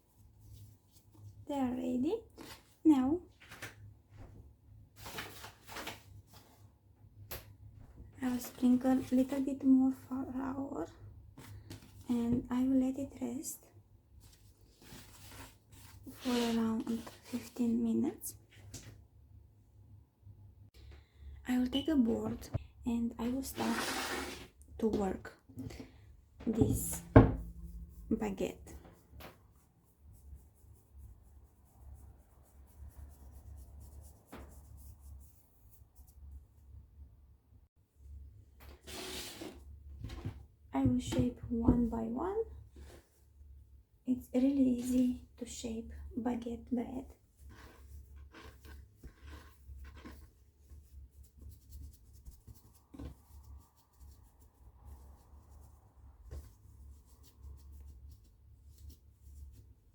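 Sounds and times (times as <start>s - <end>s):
hands rubbing and patting dough: 14.1s - 17.8s, 26.5s - 36.8s, 46.8s - 59.9s
soft thump of dough: 26.5s - 27.9s
hands kneading dough: 46.8s - 59.9s.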